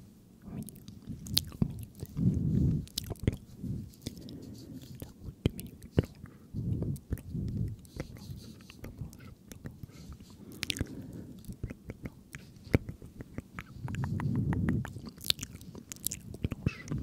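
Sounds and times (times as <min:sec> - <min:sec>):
wet mouth clicks and smacks: 0:00.6 - 0:02.2, 0:02.8 - 0:03.4, 0:07.0 - 0:17.0.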